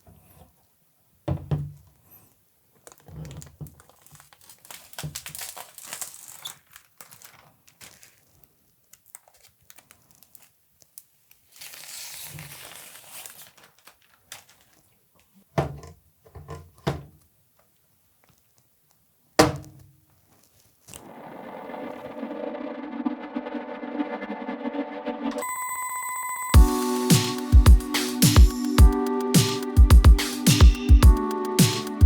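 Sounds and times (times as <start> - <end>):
plastic film peeling: 2.8 - 14.9.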